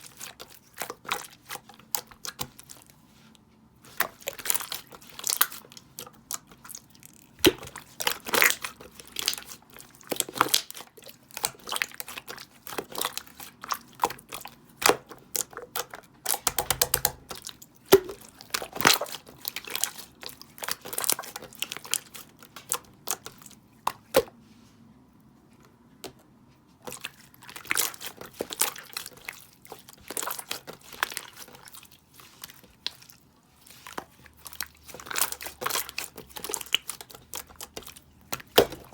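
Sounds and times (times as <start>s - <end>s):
slime crackling and popping: 4.0s - 23.4s.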